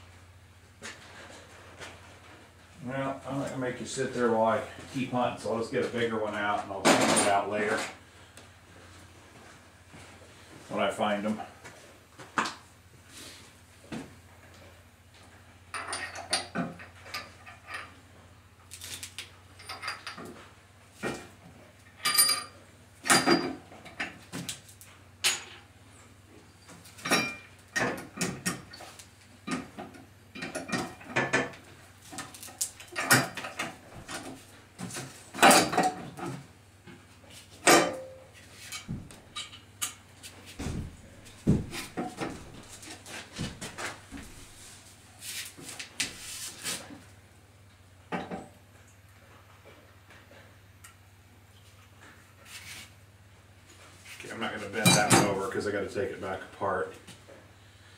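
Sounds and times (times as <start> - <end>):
metal hardware clinking: 22.0 - 23.6, 37.6 - 40.0.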